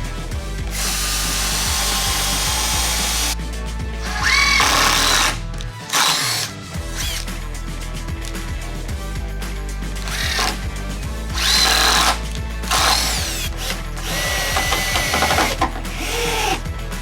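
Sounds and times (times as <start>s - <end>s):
background music: 0.0s - 17.0s
power driver driving screws: 0.7s - 3.4s, 4.0s - 7.4s, 10.0s - 10.7s, 11.3s - 16.7s.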